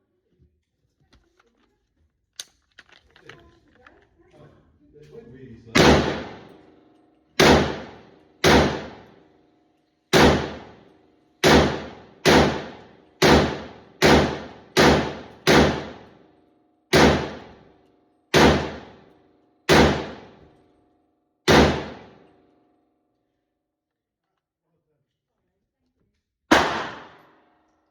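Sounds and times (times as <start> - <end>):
heavy bangs ringing with low hum: 5.8 - 6.6, 7.4 - 9.2, 10.1 - 16.2, 16.9 - 17.7, 18.3 - 19.1, 19.7 - 20.5, 21.5 - 22.3.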